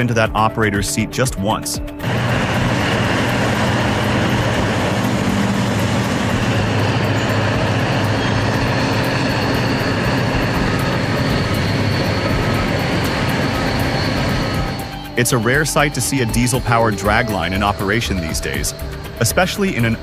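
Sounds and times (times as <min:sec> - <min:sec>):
diesel engine droning: 0:01.9 - 0:20.0.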